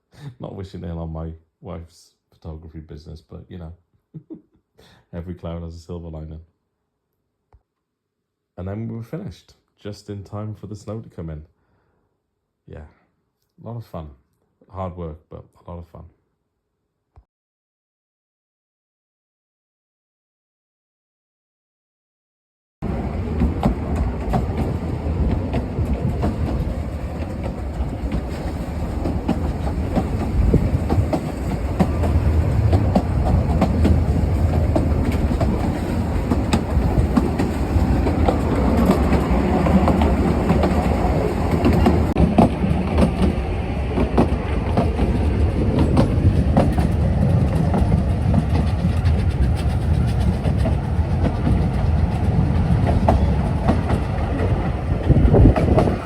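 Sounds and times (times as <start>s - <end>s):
train wheels clacking over rail joints: 23.1s - 56.0s.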